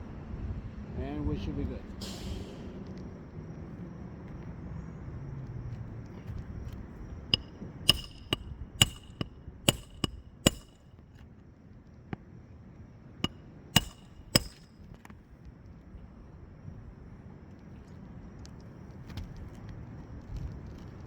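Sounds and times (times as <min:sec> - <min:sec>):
hammer driving nails into shingles: 0:07.3 - 0:10.9, 0:13.2 - 0:14.8.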